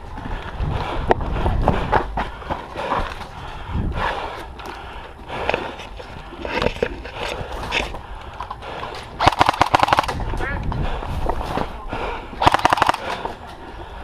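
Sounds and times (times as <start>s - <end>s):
wind rumble on microphone: 0.0s - 4.6s, 10.0s - 12.4s
footsteps: 0.0s - 9.4s, 10.0s - 14.0s.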